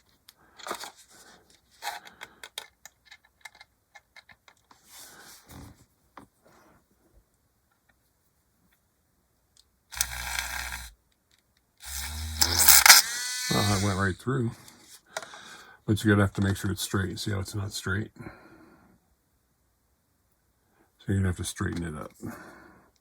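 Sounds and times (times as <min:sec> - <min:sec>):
rotary tool drilling plastic: 0:09.9 - 0:11.0, 0:11.8 - 0:14.0
handling clicks and taps: 0:21.7 - 0:21.9.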